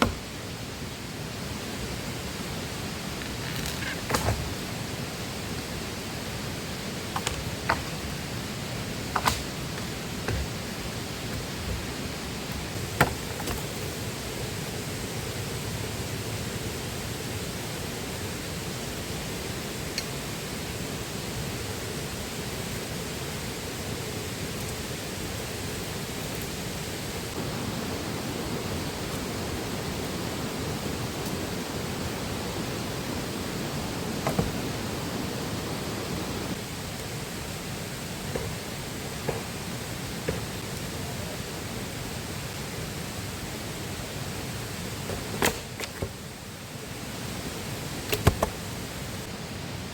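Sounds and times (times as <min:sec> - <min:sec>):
river water flowing: 0:00.0 - 0:49.9.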